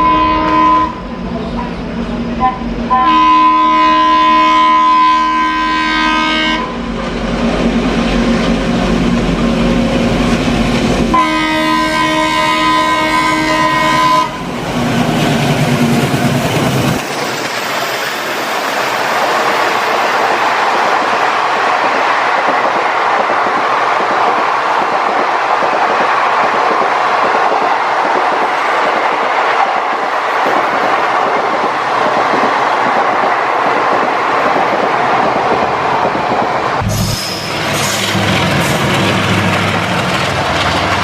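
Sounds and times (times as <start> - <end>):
locomotive horn blasts: 0.0 - 1.1, 2.4 - 6.8, 11.1 - 14.5
train coaches clattering on rails: 5.2 - 41.0.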